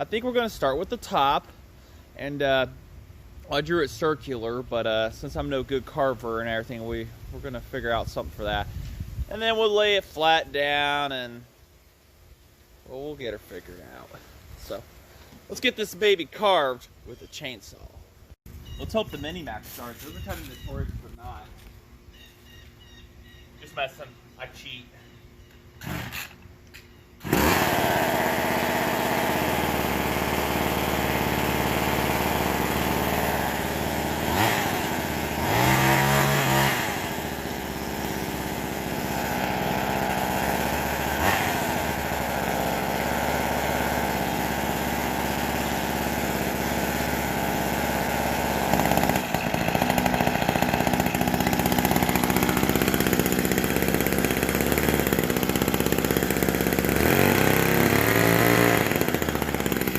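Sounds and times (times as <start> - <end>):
chainsaw engine running: 25.8 - 26.4, 27.2 - 59.9.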